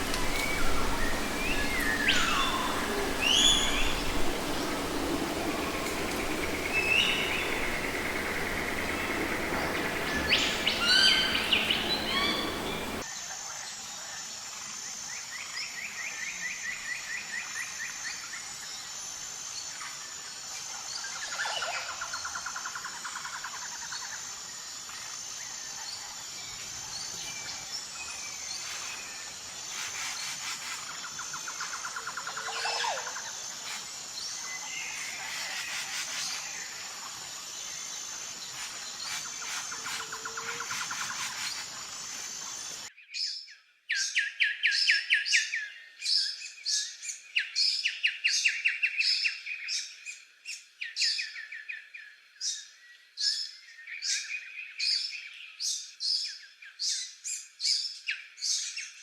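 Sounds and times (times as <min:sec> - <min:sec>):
birds calling and trilling: 0:00.0 - 0:13.1
pulsing insect chorus: 0:00.0 - 0:42.9.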